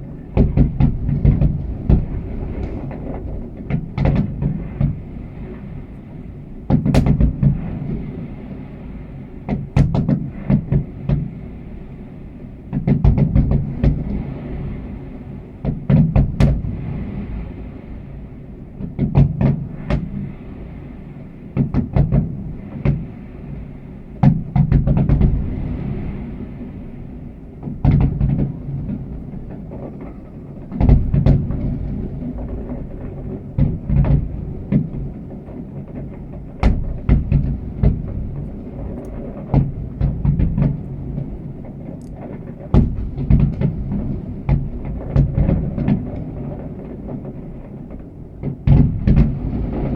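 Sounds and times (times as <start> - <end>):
fireworks exploding: 0.0 - 18.2, 18.8 - 49.9
low rumble: 25.3 - 49.9.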